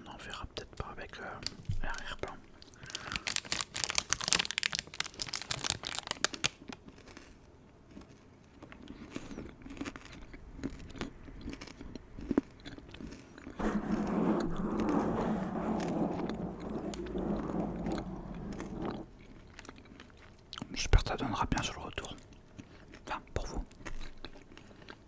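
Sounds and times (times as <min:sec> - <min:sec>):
crunching and chewing: 0:02.7 - 0:13.3, 0:22.3 - 0:25.0.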